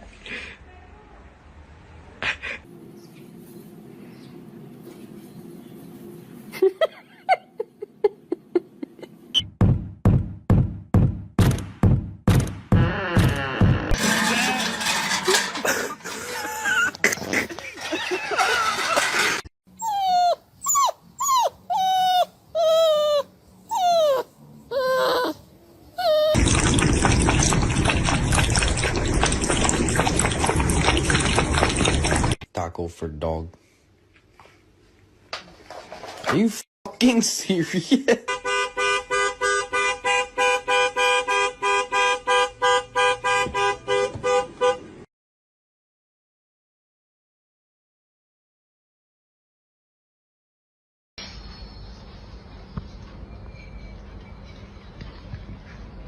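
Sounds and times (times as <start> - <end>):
dog whimpering: 19.8 - 26.4.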